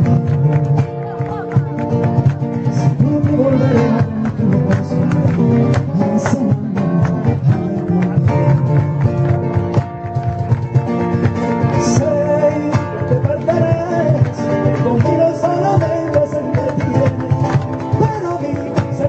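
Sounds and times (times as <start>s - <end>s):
strummed flamenco guitar: 0.0s - 19.0s
person singing: 2.6s - 9.6s, 11.4s - 19.0s.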